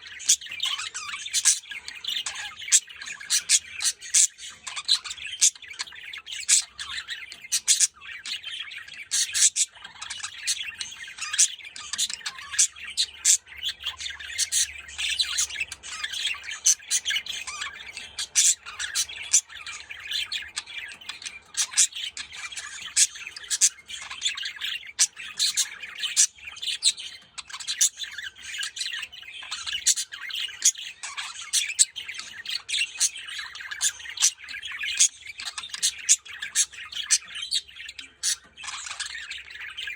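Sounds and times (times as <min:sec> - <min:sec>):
budgerigar chirps and squawks: 0:00.0 - 0:39.9
budgerigars chattering: 0:00.0 - 0:39.9.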